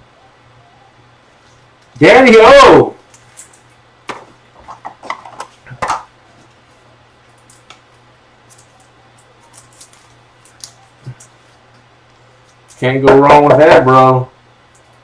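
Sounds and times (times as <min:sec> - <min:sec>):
steady low hum: 0:00.0 - 0:15.0
trading cards clicking and rustling: 0:07.3 - 0:12.9.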